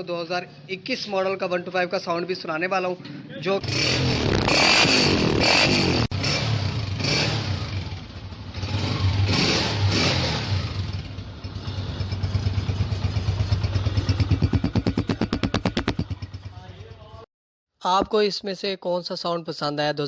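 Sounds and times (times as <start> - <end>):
motorcycle engine revving: 3.6 - 17.2
motorcycle engine idling: 10.9 - 17.2.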